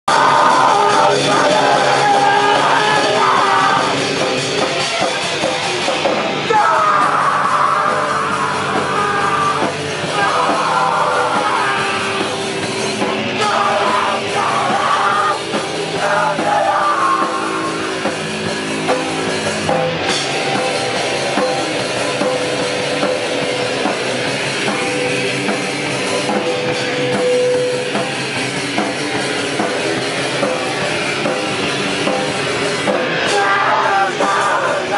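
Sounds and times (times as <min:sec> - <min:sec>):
distorted guitars: 0:00.0 - 0:34.9
drum kit: 0:00.0 - 0:34.9
person yelling vocals: 0:00.1 - 0:03.9, 0:06.4 - 0:12.1.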